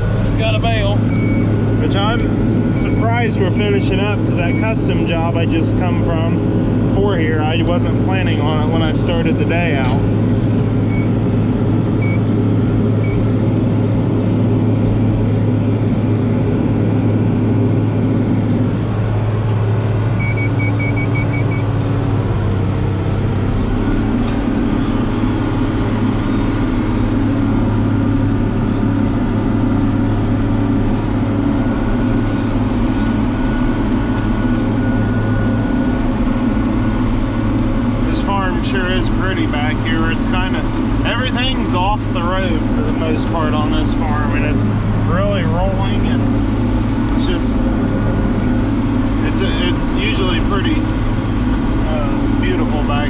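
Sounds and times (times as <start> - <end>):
tractor engine under load: 0.0 - 53.0
short electronic beeps: 1.0 - 3.8, 20.2 - 21.7.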